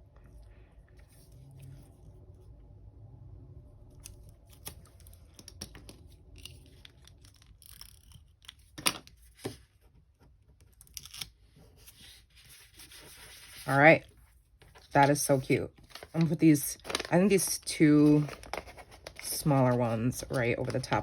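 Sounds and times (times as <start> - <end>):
paper rustling and crinkling: 10.9 - 21.0.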